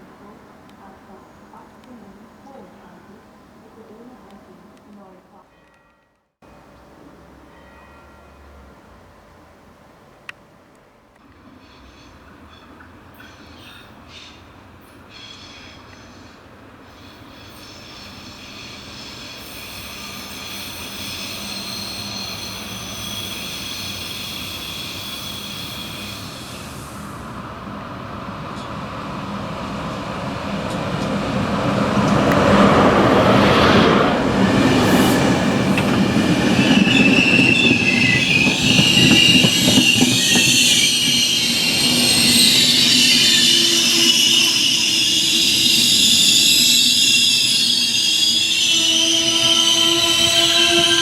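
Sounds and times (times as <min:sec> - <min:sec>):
train running on track: 0:00.0 - 0:51.0
wheels squealing on rails: 0:11.2 - 0:27.5, 0:28.3 - 0:51.0.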